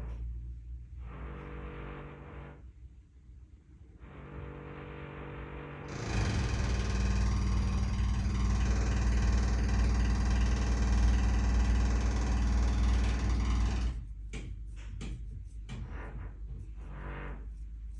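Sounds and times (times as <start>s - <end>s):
machinery engine rumbling: 5.9s - 14.2s.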